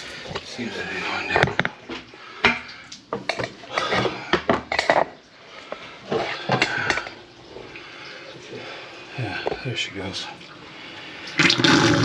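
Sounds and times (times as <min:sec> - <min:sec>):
clattering and knocking in sink: 0:00.3 - 0:07.7, 0:09.4 - 0:09.7.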